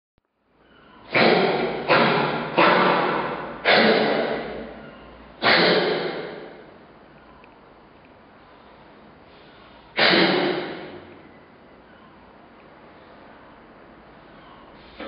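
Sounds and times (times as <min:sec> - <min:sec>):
seal coughing: 0:01.0 - 0:07.4, 0:09.4 - 0:12.3.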